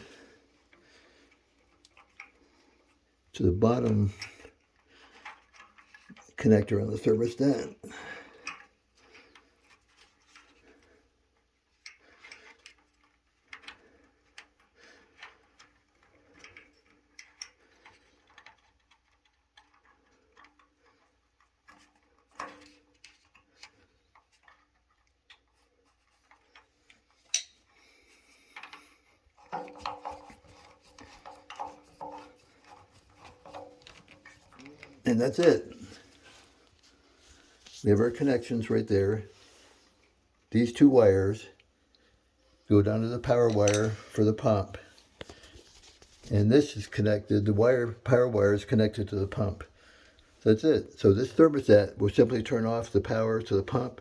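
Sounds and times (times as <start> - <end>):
clicks and scraping of tools: 0.0 - 3.1, 3.8 - 6.4, 8.0 - 40.8, 41.6 - 47.0.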